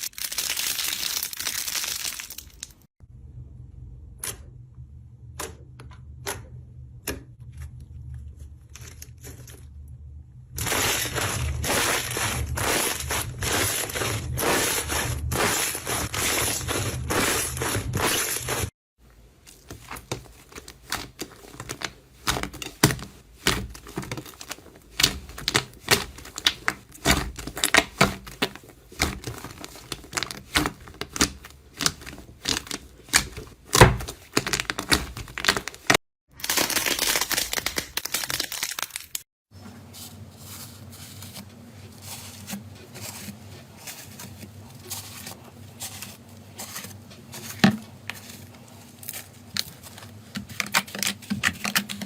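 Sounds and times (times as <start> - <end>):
low steady hum: 3.0 - 26.5
slime crackling by hand: 10.6 - 18.7, 19.5 - 39.2.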